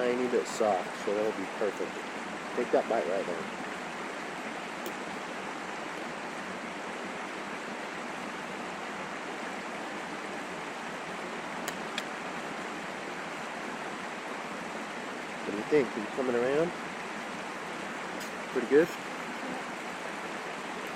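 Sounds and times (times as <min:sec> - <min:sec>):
steady rushing noise: 0:00.0 - 0:20.9
faint clicks: 0:11.6 - 0:12.1.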